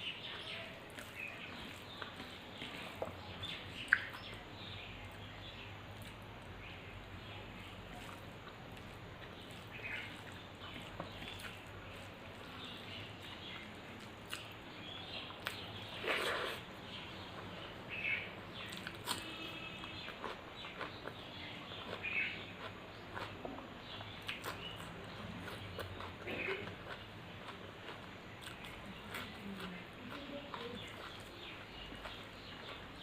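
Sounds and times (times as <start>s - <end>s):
person chewing: 7.9s - 17.5s, 18.6s - 33.0s.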